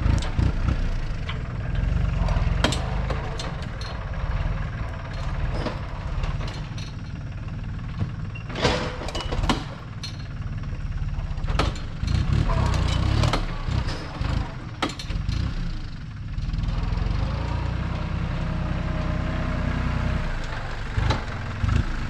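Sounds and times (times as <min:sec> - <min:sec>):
knocks and clanks: 0:00.0 - 0:15.9
engine idling: 0:00.0 - 0:22.0.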